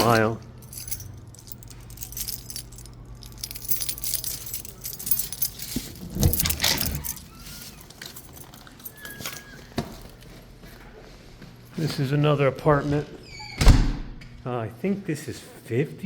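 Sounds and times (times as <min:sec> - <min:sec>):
metallic jingling and clinking: 0:00.0 - 0:10.2
low steady hum: 0:00.0 - 0:16.0.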